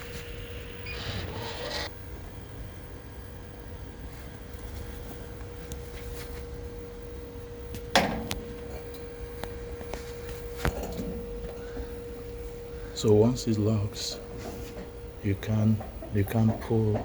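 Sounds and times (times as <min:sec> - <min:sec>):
electrical hum: 0:00.0 - 0:17.0
door clunking shut: 0:07.9 - 0:08.4.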